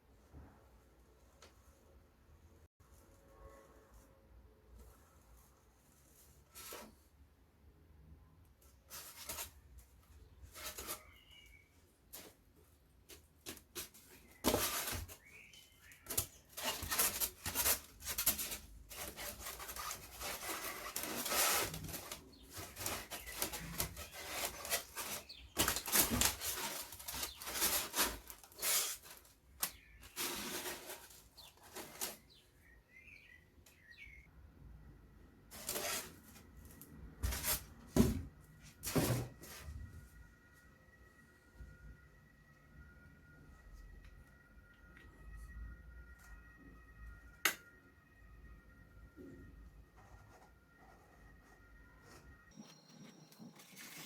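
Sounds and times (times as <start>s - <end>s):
hands and tools scraping material: 13.4s - 32.4s.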